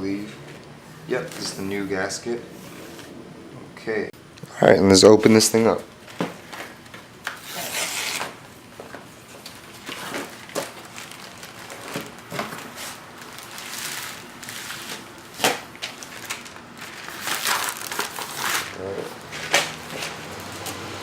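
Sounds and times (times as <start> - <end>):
packaging rustling and crinkling: 6.0 - 20.8.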